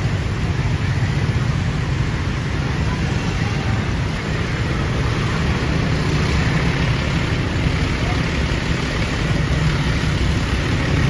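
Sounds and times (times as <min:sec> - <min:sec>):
bus engine rumbling: 0:00.0 - 0:11.0.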